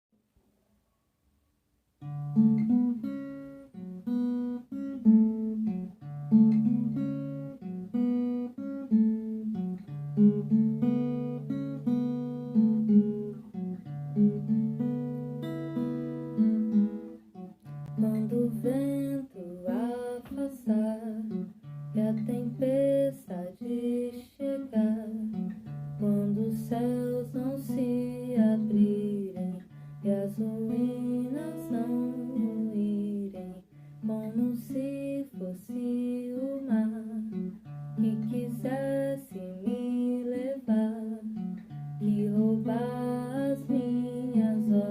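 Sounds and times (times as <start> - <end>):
acoustic guitar plucked: 2.0 - 44.9
person singing: 17.9 - 25.4, 26.0 - 41.4, 42.0 - 44.9.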